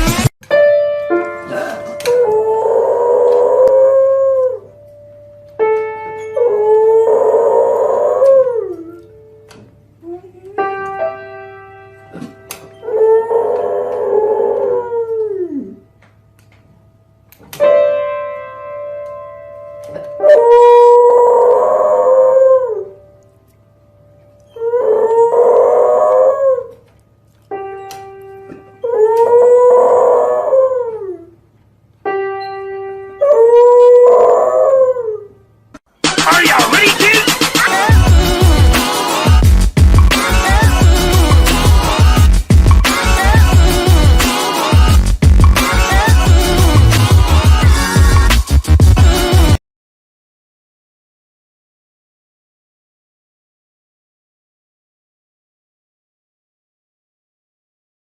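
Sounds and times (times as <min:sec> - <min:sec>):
dog howling: 0:01.5 - 0:04.7, 0:06.4 - 0:09.1, 0:12.7 - 0:15.8, 0:20.2 - 0:23.0, 0:24.5 - 0:26.9, 0:28.8 - 0:31.4, 0:33.2 - 0:35.4.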